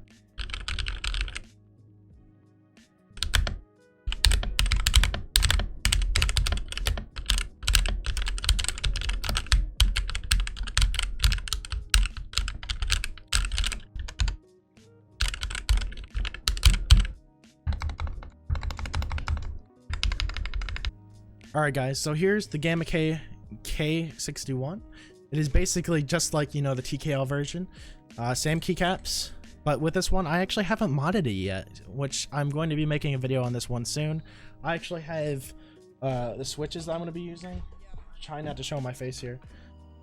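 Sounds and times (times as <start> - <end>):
fast mechanical keyboard typing: 0.4 - 1.4, 3.2 - 14.4, 15.2 - 20.9.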